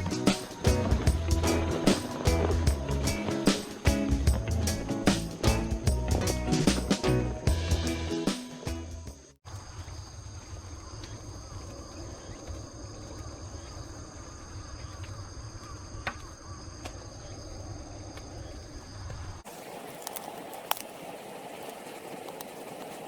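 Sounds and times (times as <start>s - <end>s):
background music: 0.0s - 9.4s
insects trilling: 9.5s - 23.0s.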